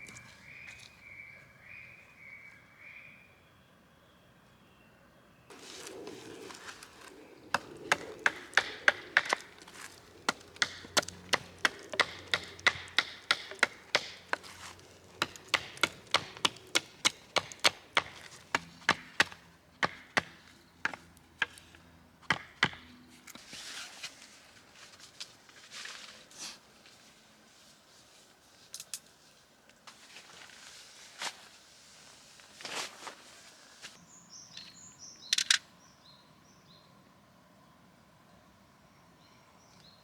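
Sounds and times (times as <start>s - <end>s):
tent pegs being hammered: 7.5s - 22.9s.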